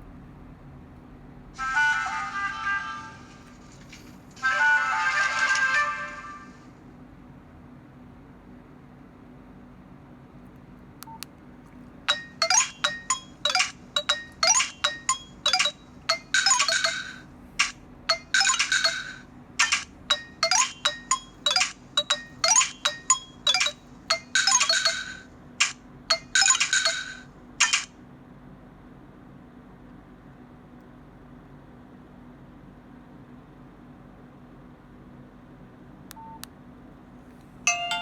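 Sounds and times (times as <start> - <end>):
mobile phone ringtone melody: 12.1 - 25.3, 26.1 - 27.8, 37.7 - 38.0.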